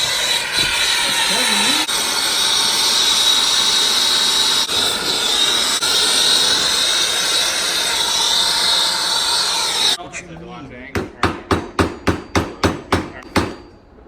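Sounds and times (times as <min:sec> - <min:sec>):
hissing rush: 0:00.0 - 0:10.0.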